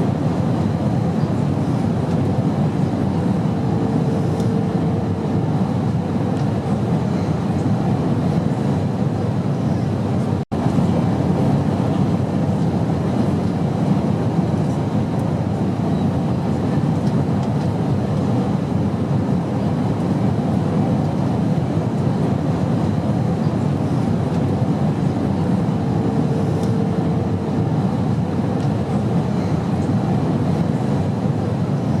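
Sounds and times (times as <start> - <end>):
airplane cabin engine rush: 0.0 - 32.0.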